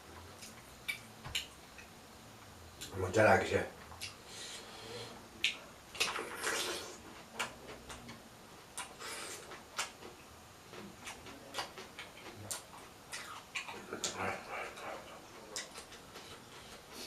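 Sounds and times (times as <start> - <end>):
person chewing: 5.4 - 17.0.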